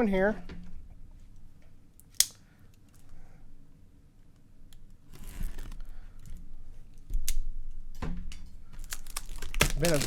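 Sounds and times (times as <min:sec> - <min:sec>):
paper and wrapper crinkling: 0:08.7 - 0:10.0.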